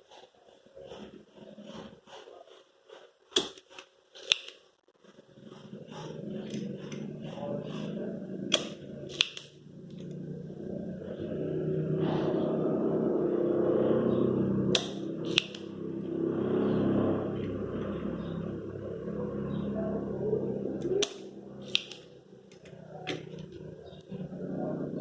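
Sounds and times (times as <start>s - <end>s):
sharp snaps: 8.5s - 10.0s, 14.7s - 15.7s, 20.8s - 22.1s
low whooshing hum: 10.0s - 25.0s.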